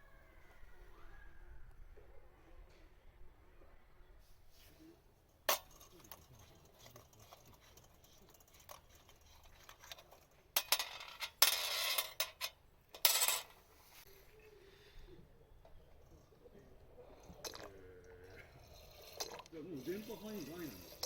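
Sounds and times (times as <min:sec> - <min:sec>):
clattering and scraping: 0:05.3 - 0:14.1, 0:15.6 - 0:21.0.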